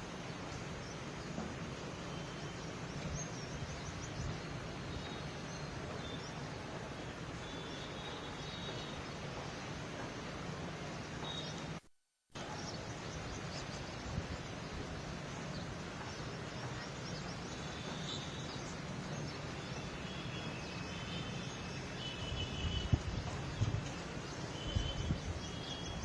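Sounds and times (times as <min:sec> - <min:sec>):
birds chirping: 0:00.2 - 0:11.8, 0:12.4 - 0:26.0.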